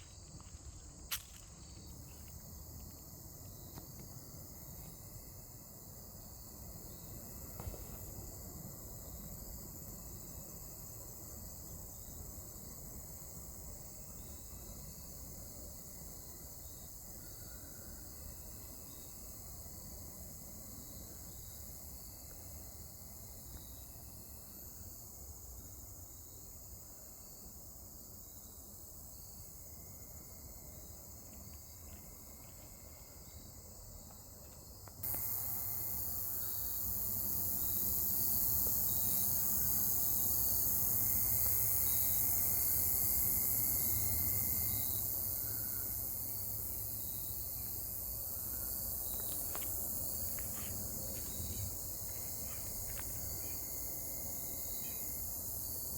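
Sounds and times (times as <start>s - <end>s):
crickets and insects chirring: 0.0s - 55.9s.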